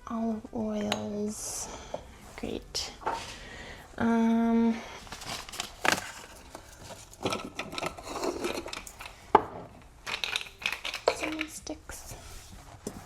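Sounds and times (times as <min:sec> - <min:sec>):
rustling: 0:04.9 - 0:09.3
jars knocking and clinking: 0:06.1 - 0:11.7.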